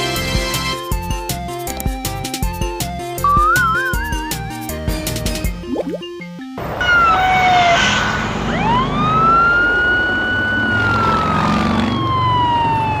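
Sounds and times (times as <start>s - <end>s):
electronic police siren wail: 3.3s - 4.5s, 6.7s - 13.0s.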